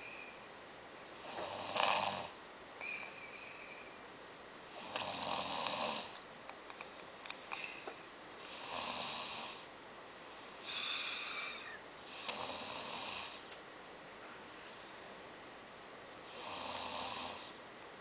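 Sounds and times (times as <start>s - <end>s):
person snoring: 1.2s - 2.4s, 4.7s - 6.2s, 8.4s - 9.7s, 10.6s - 13.4s, 16.3s - 17.6s.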